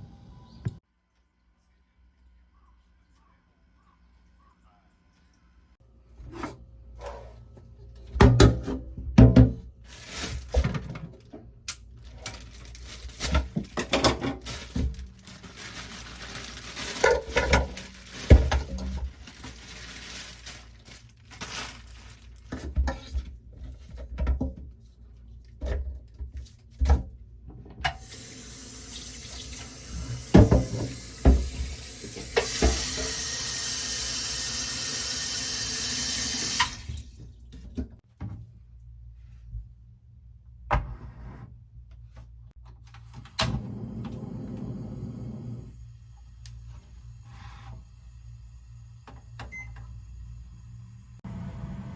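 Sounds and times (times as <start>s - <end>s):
kitchen utensils clinking: 16.9s - 18.9s
tap running into sink: 29.3s - 33.2s.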